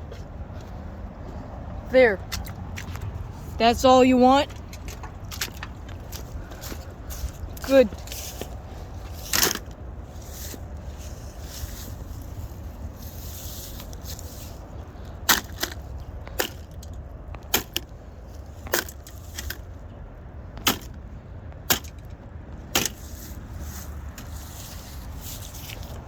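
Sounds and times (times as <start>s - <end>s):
steady low rumble: 0.0s - 26.0s
sharp knocks: 17.4s - 17.9s, 20.6s - 21.0s, 21.6s - 23.0s.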